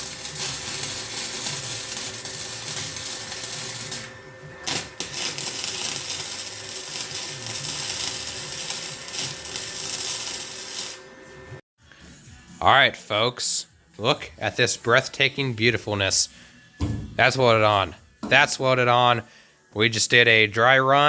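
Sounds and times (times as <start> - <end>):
arc welder crackling sizzle: 0.0 - 11.6.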